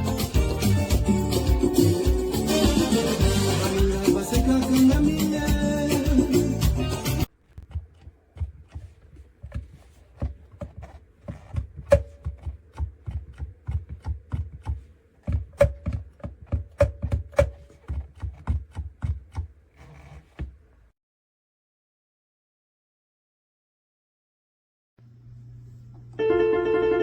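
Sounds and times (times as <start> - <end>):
pedal clicks and dull knocks: 7.6 - 19.6.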